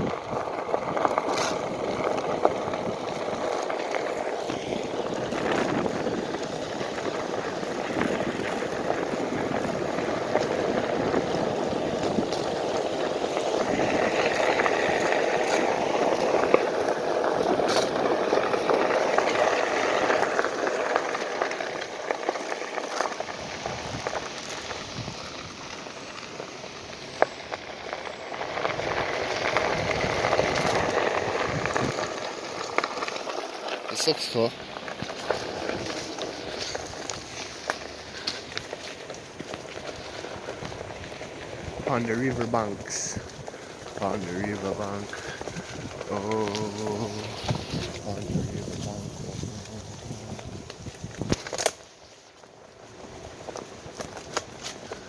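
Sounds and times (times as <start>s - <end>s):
wind rushing over microphone: 0.0s - 3.5s, 4.4s - 18.2s, 23.3s - 25.8s, 28.5s - 32.3s, 34.6s - 51.5s
board rolling over dirt trail: 0.0s - 55.0s.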